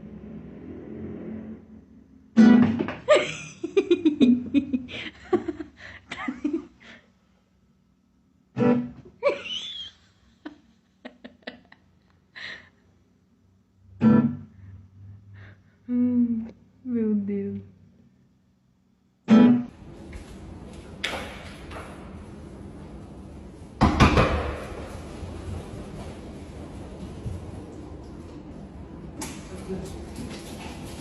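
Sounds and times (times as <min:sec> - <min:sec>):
plucked guitar music: 0:02.4 - 0:02.8, 0:08.6 - 0:09.0, 0:14.0 - 0:14.5, 0:19.3 - 0:19.7.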